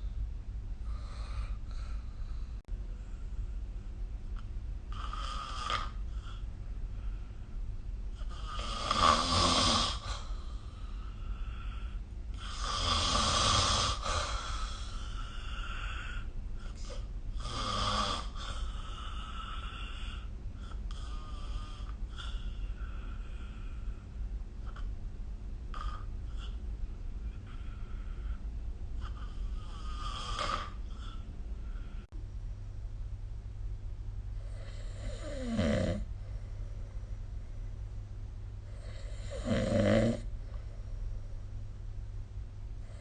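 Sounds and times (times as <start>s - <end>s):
person snoring: 4.9s - 6.4s, 8.2s - 10.5s, 11.4s - 23.5s, 29.0s - 31.2s, 34.4s - 36.1s, 38.7s - 40.3s.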